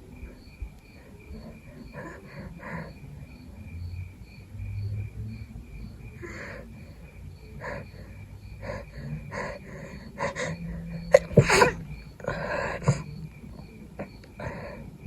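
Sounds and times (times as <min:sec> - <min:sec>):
person sniffling: 0:07.6 - 0:13.2
person sneezing: 0:11.1 - 0:11.9.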